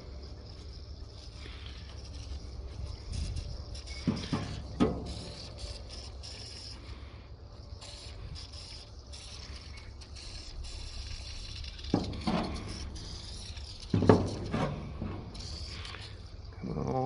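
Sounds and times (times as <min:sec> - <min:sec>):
rubbing and scraping: 0:08.4 - 0:16.3.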